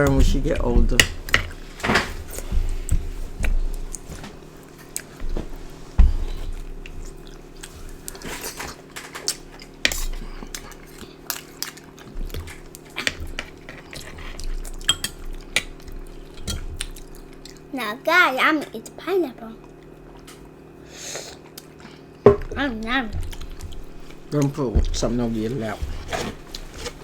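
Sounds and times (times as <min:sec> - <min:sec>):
steady low hum: 0:00.0 - 0:27.0
chewing and smacking: 0:02.2 - 0:17.7, 0:21.4 - 0:27.0.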